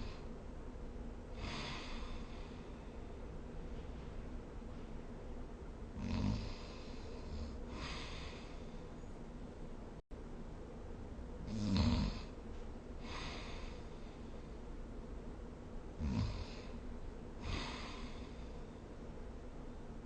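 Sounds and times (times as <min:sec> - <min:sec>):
person snoring: 0:01.4 - 0:02.6, 0:06.0 - 0:08.6, 0:11.5 - 0:12.3, 0:16.0 - 0:16.8, 0:17.4 - 0:18.5
breathy out-breath: 0:01.4 - 0:03.2, 0:06.4 - 0:08.9, 0:13.0 - 0:14.5, 0:17.4 - 0:18.8.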